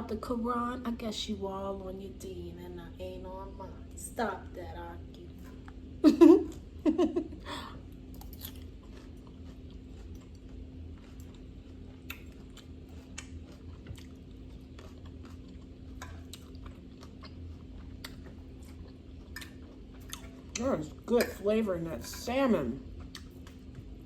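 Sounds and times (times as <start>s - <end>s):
faint steady hum: 0.0s - 24.0s
person chewing food: 5.6s - 21.4s, 22.1s - 24.0s
wet mouth clicks and smacks: 12.0s - 12.4s.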